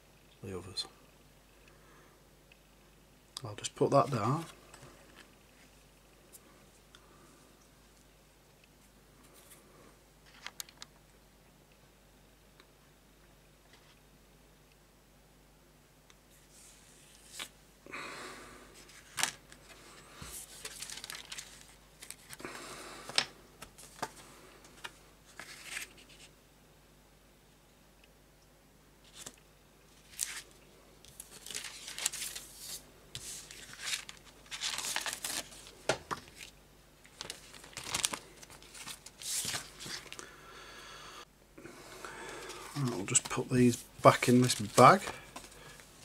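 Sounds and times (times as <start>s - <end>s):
plastic bags crinkling: 20.4s - 22.4s, 31.1s - 32.8s, 33.4s - 40.3s, 42.3s - 46.0s.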